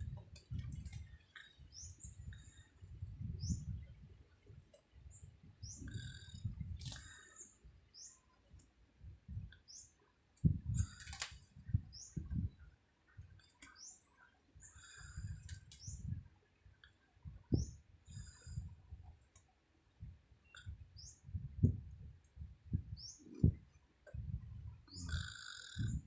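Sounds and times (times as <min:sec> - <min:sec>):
small bird chirping: 0:05.1 - 0:08.3, 0:09.6 - 0:10.0, 0:20.4 - 0:21.4, 0:22.9 - 0:23.6, 0:24.9 - 0:26.0.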